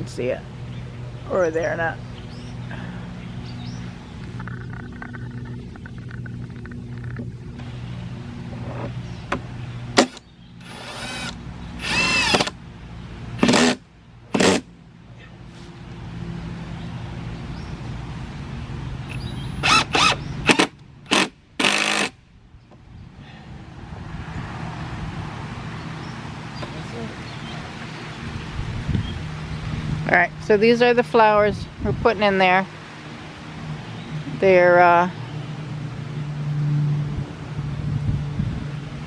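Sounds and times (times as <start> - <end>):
impact driver bursts: 10.0 - 12.6, 19.6 - 22.2.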